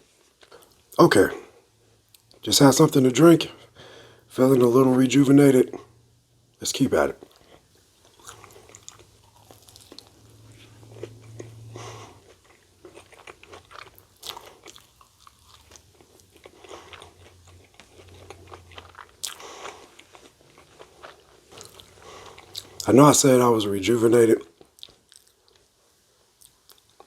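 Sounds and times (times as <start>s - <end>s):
crunching while chewing: 7.2s - 22.9s, 24.5s - 27.0s.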